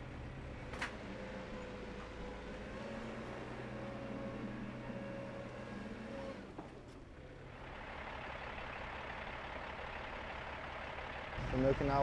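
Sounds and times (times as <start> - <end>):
truck engine running: 7.1 - 12.0.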